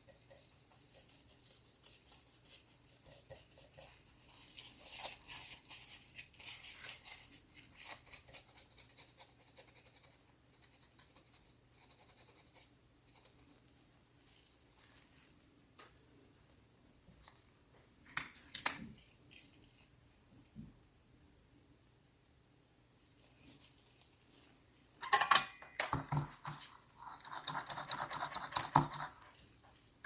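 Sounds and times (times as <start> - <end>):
small tool scratching circuit board: 7.8 - 13.6, 26.4 - 29.3.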